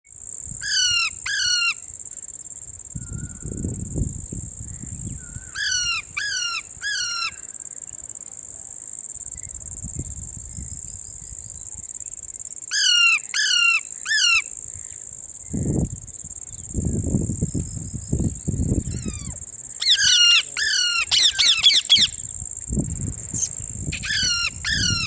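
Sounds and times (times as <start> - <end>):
high-pitched insect drone: 0.1 - 25.0
parrot calling: 5.5 - 7.4, 18.8 - 22.2, 23.2 - 25.0.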